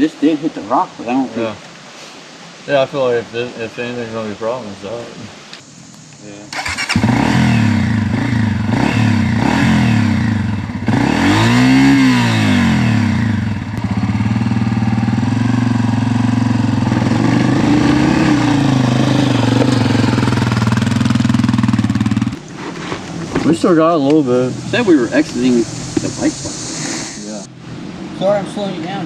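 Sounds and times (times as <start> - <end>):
dirt bike engine revving: 6.5 - 22.4, 23.3 - 27.4.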